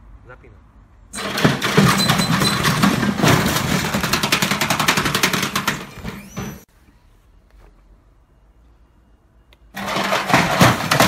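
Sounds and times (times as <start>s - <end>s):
washing machine drum banging: 1.2s - 6.6s.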